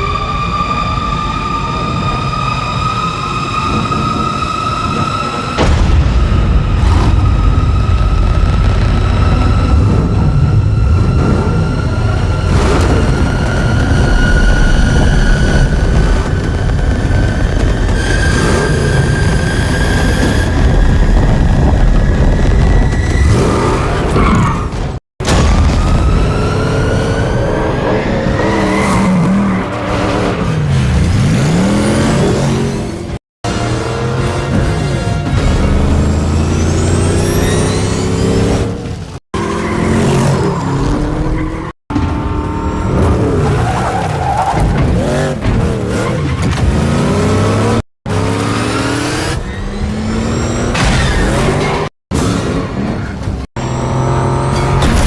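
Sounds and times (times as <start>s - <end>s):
engine rumble with rising whine: 6.2s - 23.4s
car engine revving: 26.3s - 55.0s.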